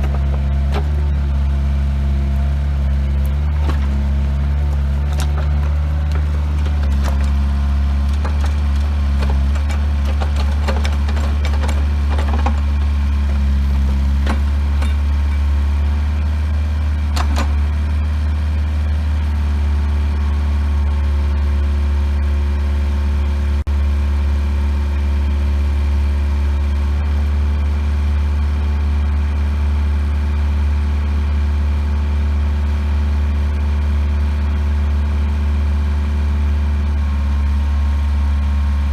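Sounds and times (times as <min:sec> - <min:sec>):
clanks and knocks: 0:00.0 - 0:01.1, 0:03.2 - 0:15.6, 0:17.1 - 0:17.6
diesel engine running: 0:00.0 - 0:38.9.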